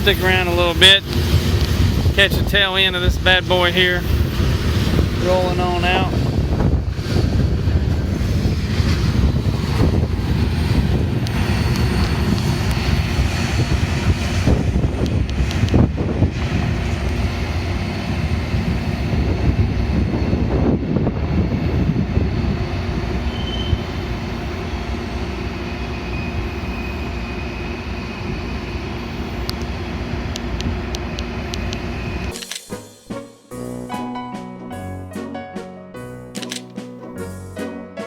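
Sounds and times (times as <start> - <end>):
train wheels rumbling on rails: 0.0 - 33.3
faint wheel squeal: 23.3 - 24.0.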